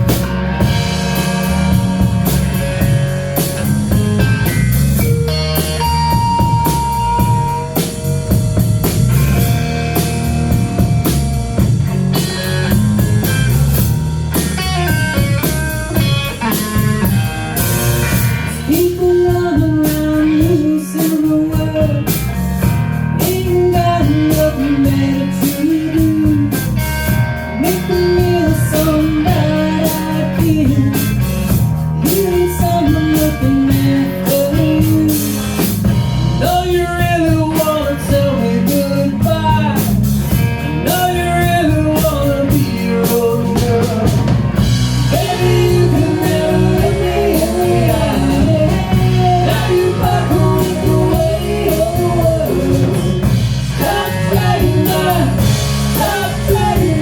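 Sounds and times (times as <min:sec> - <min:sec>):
bending melodic guitar phrase: 0:00.0 - 0:19.5, 0:40.2 - 0:57.0
rock band playing live: 0:00.0 - 0:57.0.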